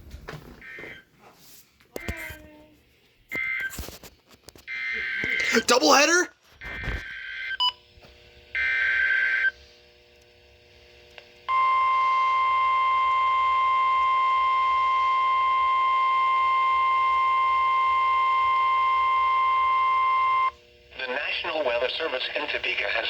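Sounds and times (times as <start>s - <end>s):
steady warning alarm tone: 11.5s - 20.6s.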